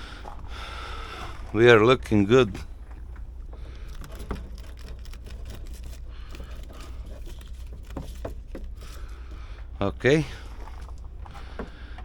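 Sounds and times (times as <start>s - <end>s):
steady low hum: 0.0s - 12.0s
handling clicks and rustles: 1.3s - 12.0s.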